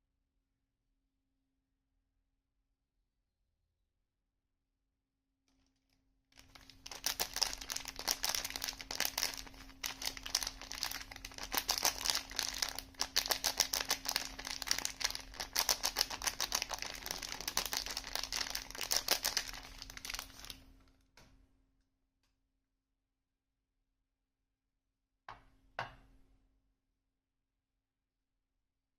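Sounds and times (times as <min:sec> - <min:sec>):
packaging crinkling: 0:06.4 - 0:20.7.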